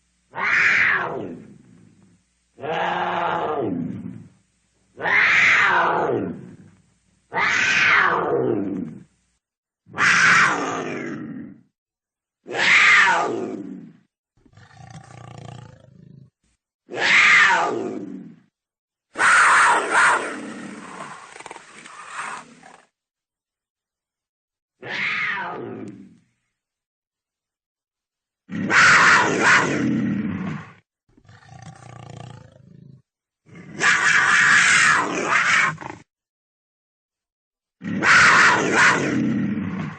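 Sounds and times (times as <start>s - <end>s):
cougar calling: 0.3s - 1.5s, 5.0s - 6.6s, 19.2s - 22.8s, 38.0s - 39.9s.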